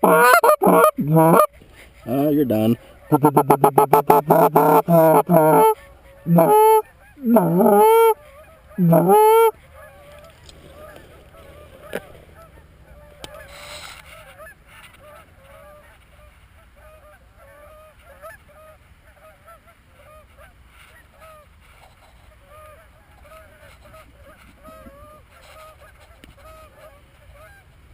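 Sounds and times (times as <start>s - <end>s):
geese honking: 0.0s - 21.4s.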